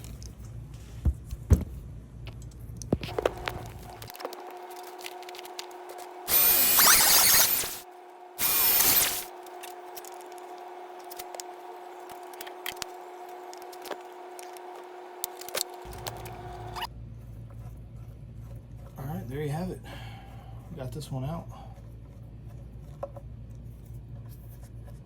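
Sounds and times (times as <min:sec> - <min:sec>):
steady hum: 0:06.2 - 0:07.8, 0:08.4 - 0:09.4
rotary tool grinding metal: 0:06.3 - 0:07.8, 0:08.4 - 0:09.3.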